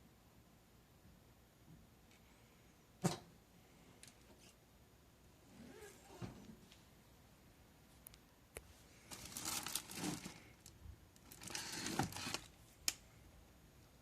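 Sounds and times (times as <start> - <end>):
packaging crinkling and rustling: 9.1 - 12.6.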